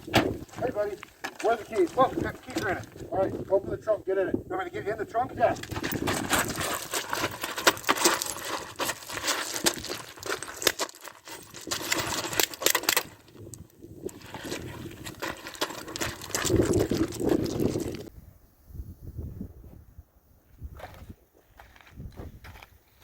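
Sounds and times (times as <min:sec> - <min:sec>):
clothing and gear rustling: 0:00.0 - 0:03.1, 0:05.4 - 0:18.1.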